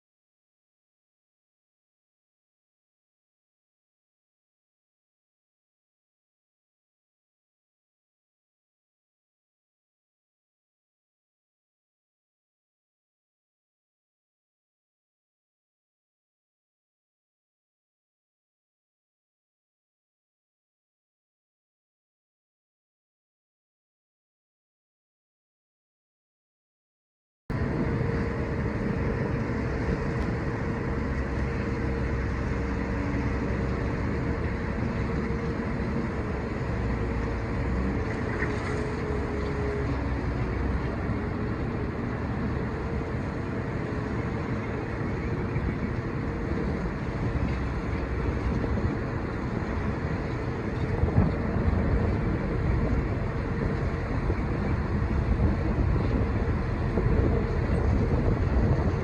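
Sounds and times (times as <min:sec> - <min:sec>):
boat engine rumbling: 0:27.5 - 0:59.0
wind buffeting microphone: 0:27.5 - 0:59.0.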